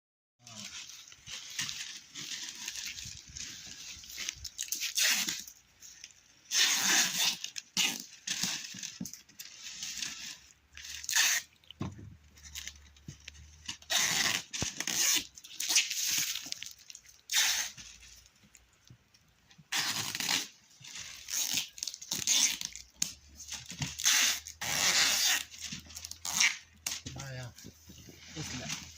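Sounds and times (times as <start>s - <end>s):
leaves and branches rustling: 0.4s - 4.8s.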